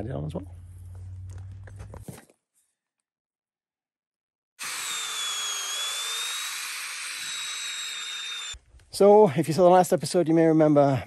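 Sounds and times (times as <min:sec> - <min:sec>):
cordless drill whine: 0:04.6 - 0:08.6.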